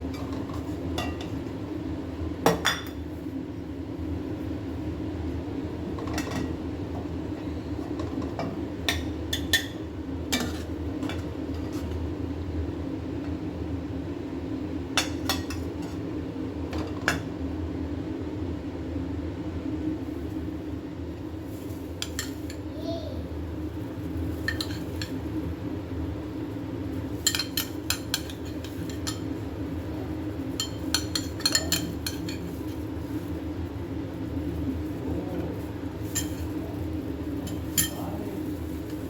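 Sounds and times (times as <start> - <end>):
dishes and utensils clinking: 22.0 - 22.6, 24.4 - 25.2, 27.2 - 29.3, 30.5 - 32.8, 36.0 - 36.6, 37.4 - 39.0.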